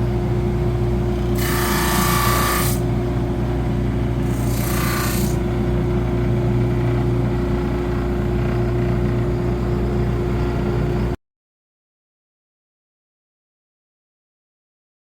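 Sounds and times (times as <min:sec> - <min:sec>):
power tool motor running: 0:01.2 - 0:02.9, 0:04.2 - 0:05.6
tool cutting into wood: 0:01.3 - 0:02.8, 0:04.2 - 0:05.4.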